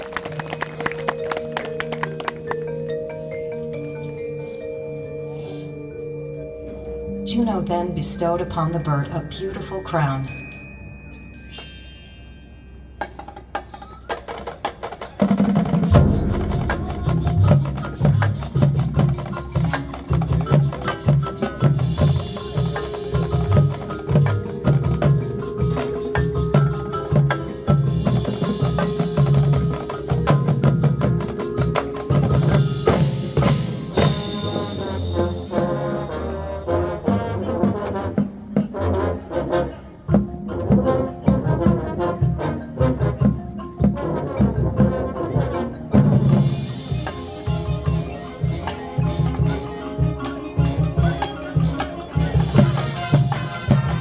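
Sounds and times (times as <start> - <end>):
marching band playing: 0.0 - 4.2, 13.0 - 54.0
cymbal crash ringing: 15.8 - 19.1.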